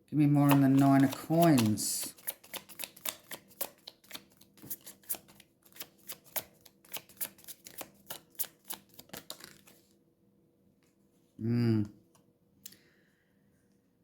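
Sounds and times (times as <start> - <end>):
cards being shuffled by hand: 0.3 - 9.9.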